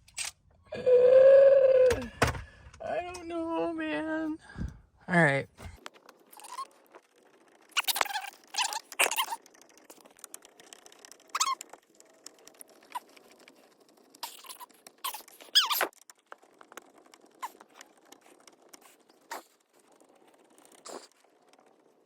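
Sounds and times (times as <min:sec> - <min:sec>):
plastic parts clicking and scraping: 0:05.6 - 0:22.0.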